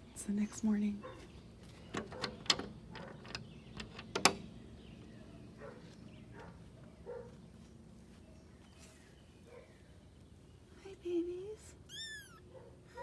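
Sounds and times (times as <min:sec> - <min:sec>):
door latch clicks and knocks: 0:02.0 - 0:04.4.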